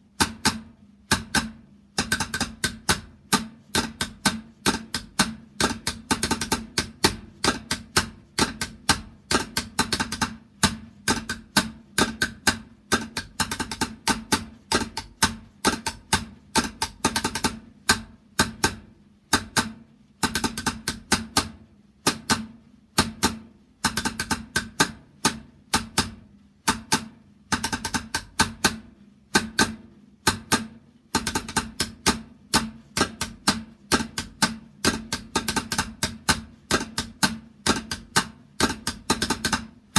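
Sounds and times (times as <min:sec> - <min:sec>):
drum struck with sticks: 0:00.0 - 0:39.9.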